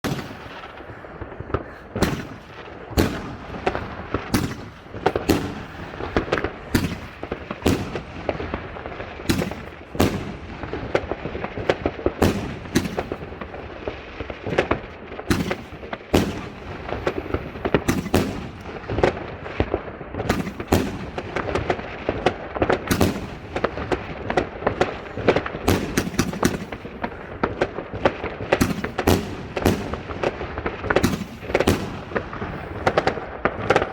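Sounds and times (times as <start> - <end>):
fireworks bangs and cracks: 0.0 - 33.9
rumble of distant bursts: 28.9 - 33.9.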